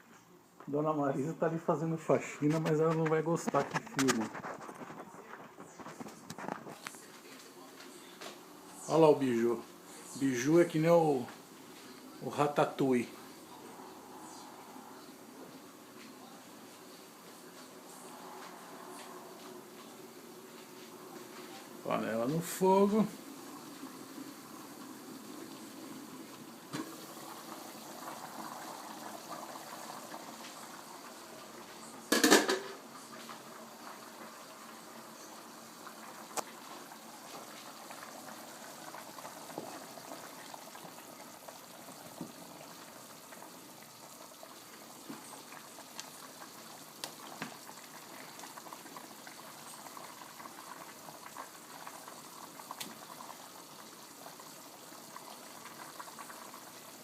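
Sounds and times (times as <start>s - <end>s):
pot boiling with bubbling hiss: 0.0s - 57.0s
small pops: 47.0s - 47.6s.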